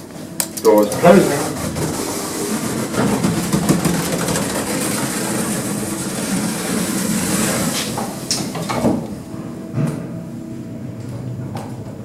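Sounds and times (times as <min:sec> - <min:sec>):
lift mechanical rumble and rattle: 0:00.0 - 0:12.0.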